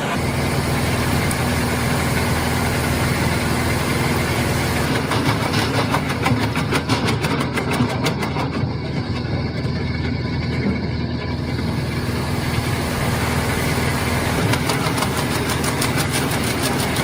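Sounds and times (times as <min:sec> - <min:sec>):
machine engine running: 0:00.0 - 0:17.0
wood cracking being cut: 0:14.2 - 0:17.0.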